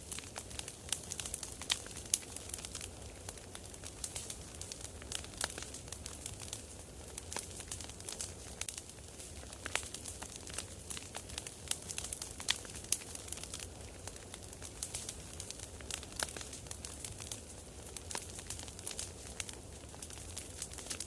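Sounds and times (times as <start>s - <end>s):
campfire crackling and popping: 0.0s - 21.0s.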